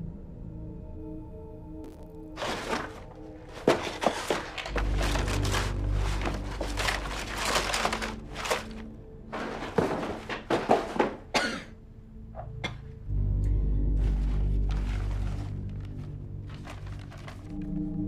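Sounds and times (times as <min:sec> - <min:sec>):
tense background music: 0:00.0 - 0:18.0
rustling: 0:02.4 - 0:11.3, 0:14.0 - 0:17.8.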